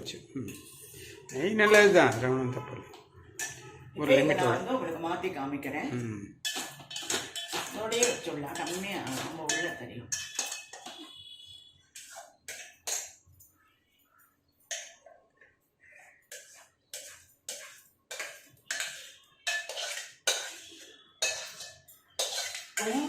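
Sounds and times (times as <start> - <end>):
metal ladle scraping in a pot: 3.3 - 4.4, 6.4 - 13.2, 15.8 - 23.0.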